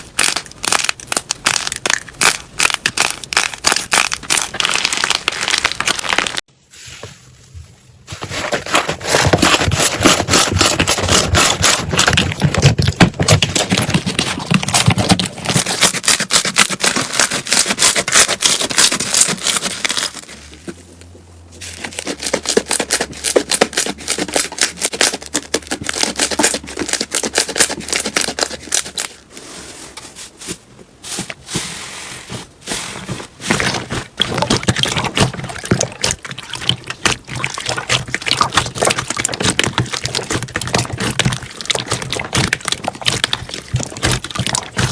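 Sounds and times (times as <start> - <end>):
slime crackling and popping: 0.0 - 6.5, 33.6 - 44.9.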